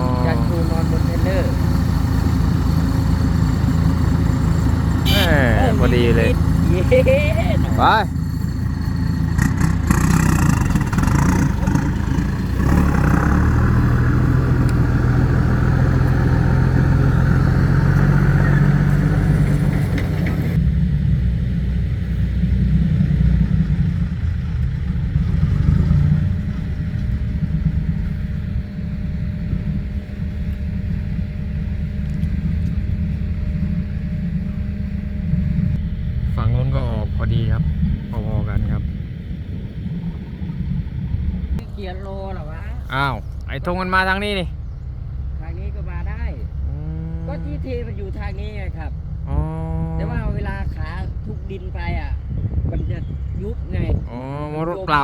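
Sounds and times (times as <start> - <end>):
truck diesel engine droning: 0.0 - 55.0.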